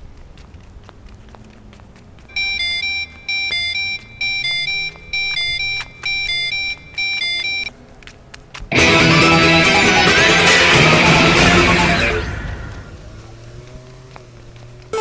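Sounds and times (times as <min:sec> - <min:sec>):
electronic beeping ringtone tune: 0:02.3 - 0:07.7.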